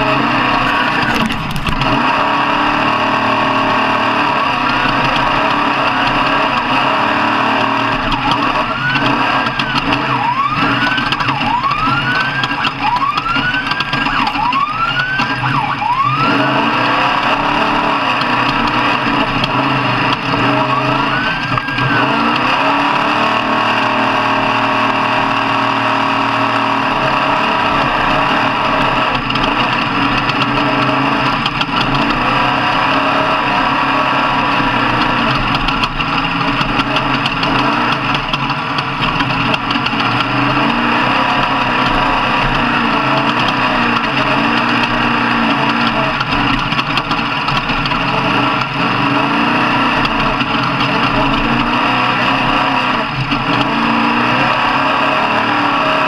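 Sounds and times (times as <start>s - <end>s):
engines running: 0.0s - 56.0s
truck engine revving hard: 0.0s - 56.0s.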